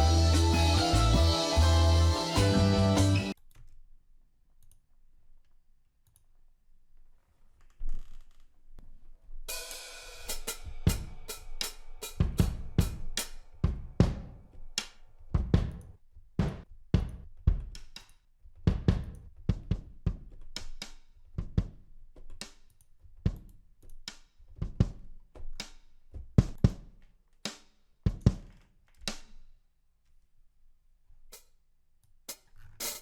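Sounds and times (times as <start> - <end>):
drum kit hits: 0.0 - 3.4, 12.0 - 14.4, 16.4 - 17.2.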